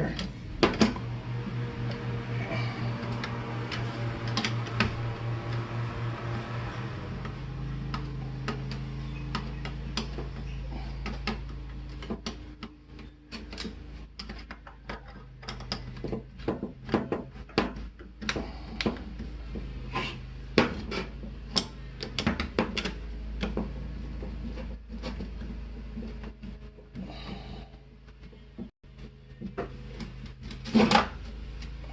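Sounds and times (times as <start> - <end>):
steady low hum: 0.0 - 14.2.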